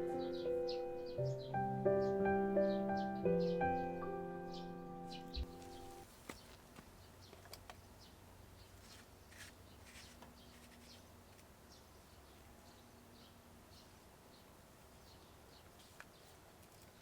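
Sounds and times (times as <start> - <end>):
high bird chirps: 0.0 - 6.0
faint outdoor ambience: 0.0 - 17.0.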